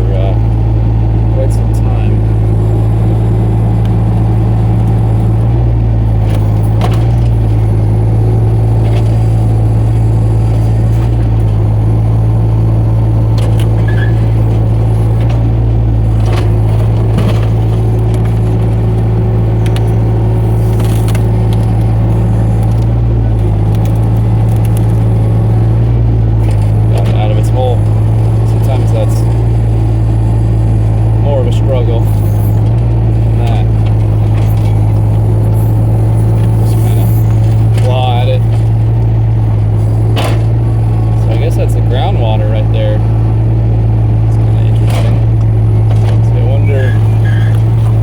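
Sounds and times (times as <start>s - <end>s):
excavator engine droning: 0.0s - 48.0s
sharp clicks and cracks: 13.3s - 15.6s, 16.2s - 25.1s.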